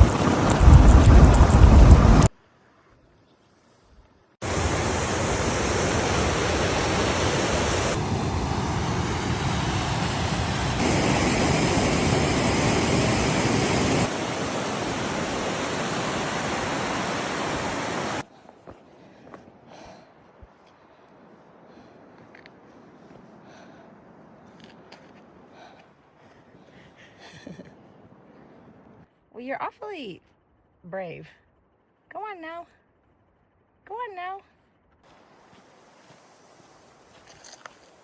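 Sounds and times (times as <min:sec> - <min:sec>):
steady rushing noise: 0:00.0 - 0:02.3, 0:04.4 - 0:18.3
wind buffeting microphone: 0:00.0 - 0:02.3.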